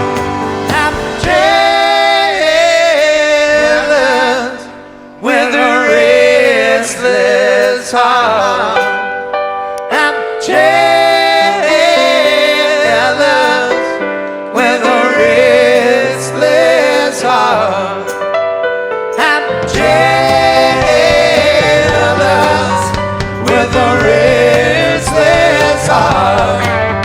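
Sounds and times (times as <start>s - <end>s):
rock song with singing: 0.0s - 9.2s, 19.2s - 27.0s.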